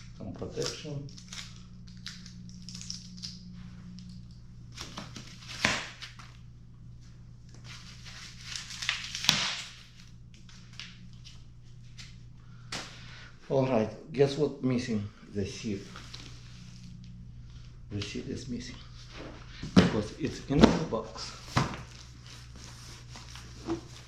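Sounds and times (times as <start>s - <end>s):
plastic packaging crinkling: 0.5s - 6.4s, 7.6s - 12.0s.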